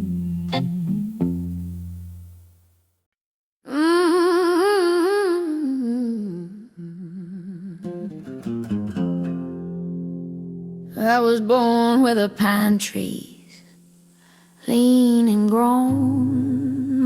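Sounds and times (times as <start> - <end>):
held electric guitar and bass chord: 0.0 - 2.5
electric guitar notes: 0.0 - 2.6.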